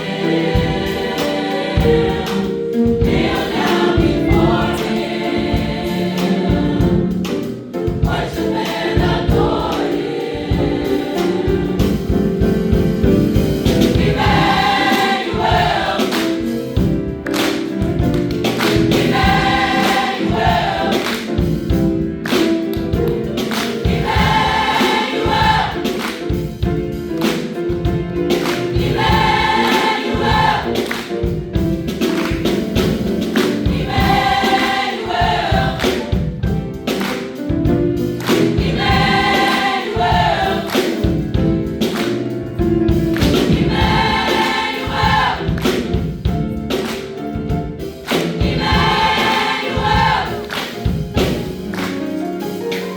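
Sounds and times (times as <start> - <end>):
choir singing: 0.0 - 12.6, 13.8 - 17.0, 18.6 - 22.0, 23.4 - 26.3, 28.4 - 31.1, 32.9 - 36.2, 38.3 - 42.0, 43.3 - 46.0, 48.0 - 50.8
instrumental accompaniment: 0.0 - 52.9.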